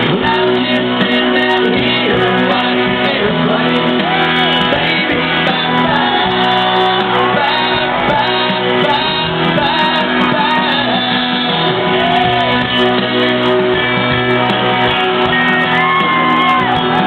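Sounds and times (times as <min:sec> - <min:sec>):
man singing: 0:00.0 - 0:13.7
country band playing live: 0:00.0 - 0:17.0.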